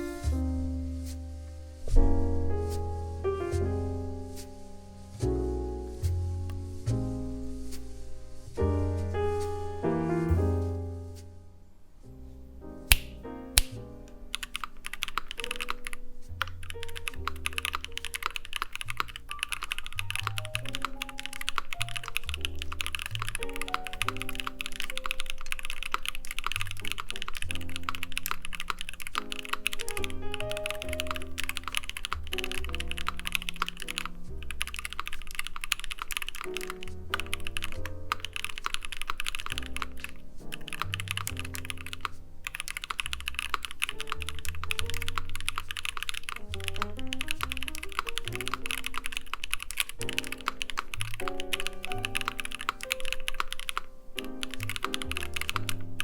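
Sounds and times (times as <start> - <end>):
background music with bass: 0.0 - 11.3
mechanical keyboard typing: 14.3 - 56.0.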